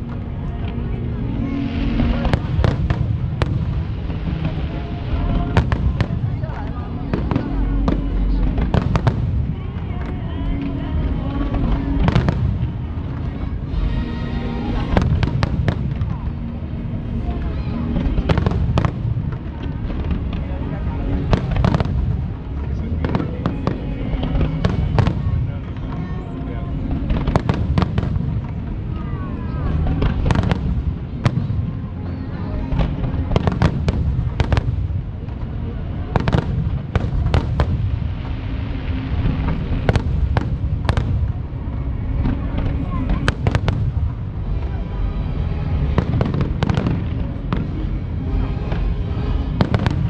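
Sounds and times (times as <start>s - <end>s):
fireworks cracking: 0.0s - 50.0s
low rumble of fireworks bursts: 0.0s - 50.0s.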